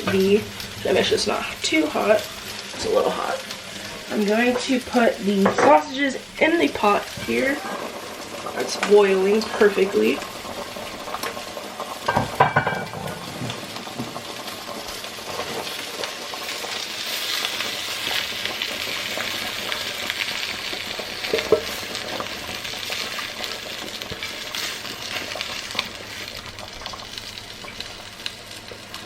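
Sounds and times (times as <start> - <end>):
water boiling with sizzling hiss: 0.0 - 29.0
utensil clattering on pan: 5.4 - 6.0, 11.2 - 14.4, 21.2 - 21.8.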